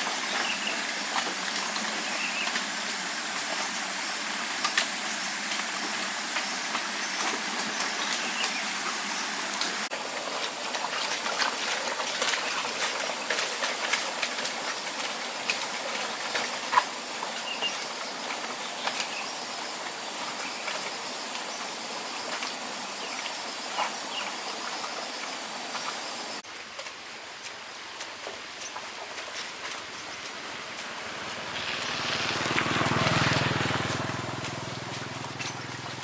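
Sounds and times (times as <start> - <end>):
outdoor hiss: 29.8 - 34.2
vehicle engine passing by: 30.2 - 36.0.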